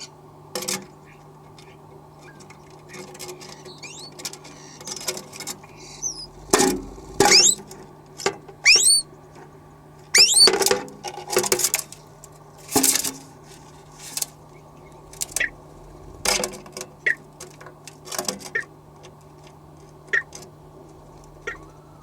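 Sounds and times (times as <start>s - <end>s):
starlings calling: 1.0s - 7.7s, 8.6s - 9.0s, 13.9s - 16.5s, 20.1s - 22.0s
steady low hum: 3.6s - 7.9s, 12.1s - 17.1s, 20.4s - 22.0s.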